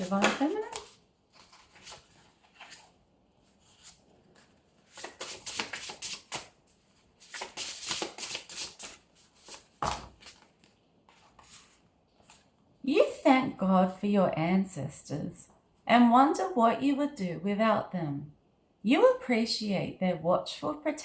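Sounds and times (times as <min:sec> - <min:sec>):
cards being shuffled: 0:00.0 - 0:03.0, 0:03.6 - 0:12.5.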